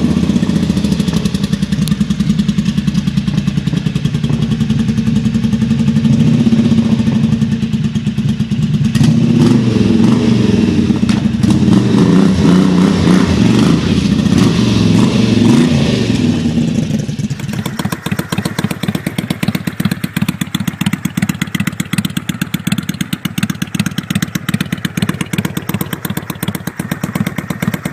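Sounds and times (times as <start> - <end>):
motorcycle engine idling: 0.0 - 27.9
motorcycle engine revving: 0.0 - 27.9.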